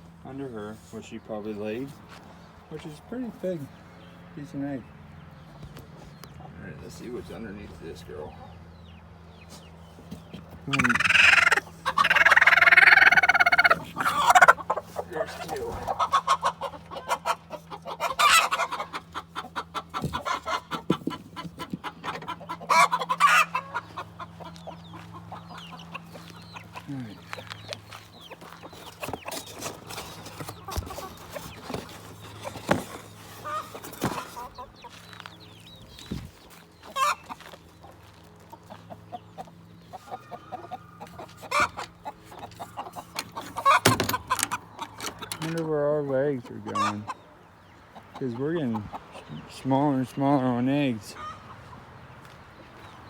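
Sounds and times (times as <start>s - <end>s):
chickens clucking: 0.0s - 53.0s
harsh chicken calls: 10.5s - 45.6s, 46.2s - 50.1s, 51.0s - 53.0s.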